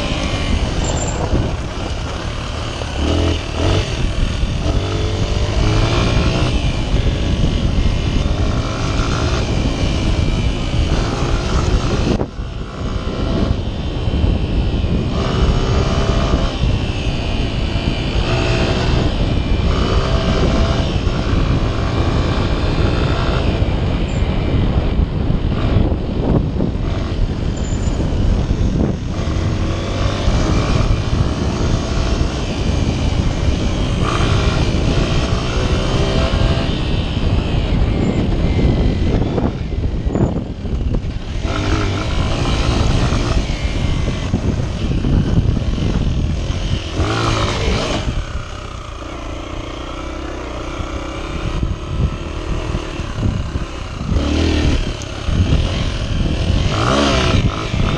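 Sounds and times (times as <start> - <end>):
motorcycle engine revving: 0.0 - 57.9
wind rumble on microphone: 0.0 - 57.9.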